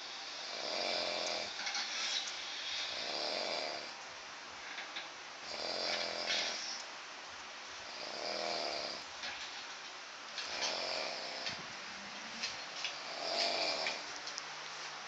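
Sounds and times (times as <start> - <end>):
man snoring: 0.2 - 1.6, 2.6 - 4.0, 5.4 - 6.8, 7.8 - 9.1, 10.4 - 11.6, 12.9 - 14.1.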